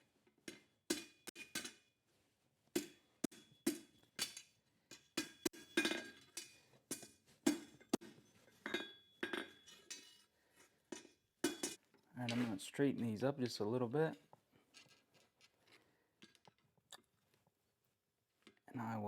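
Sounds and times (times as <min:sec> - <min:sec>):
hammer striking steel on anvil: 0:00.5 - 0:01.9, 0:02.8 - 0:10.2, 0:11.0 - 0:11.8.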